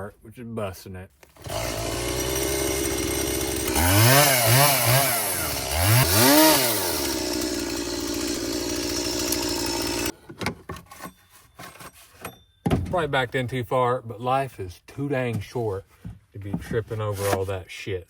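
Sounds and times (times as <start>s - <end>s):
chainsaw revving: 1.4s - 10.1s.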